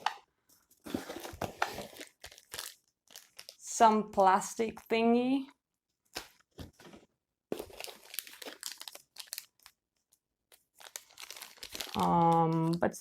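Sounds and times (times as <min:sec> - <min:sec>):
plastic packaging crinkling: 0:00.8 - 0:03.8, 0:06.1 - 0:13.0.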